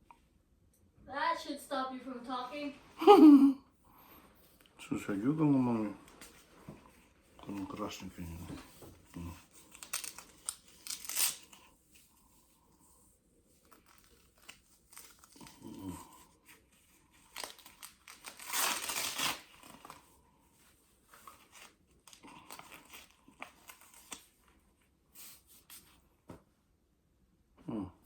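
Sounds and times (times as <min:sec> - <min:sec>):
strap ripping: 0:09.2 - 0:11.7, 0:13.7 - 0:16.1, 0:17.2 - 0:20.0.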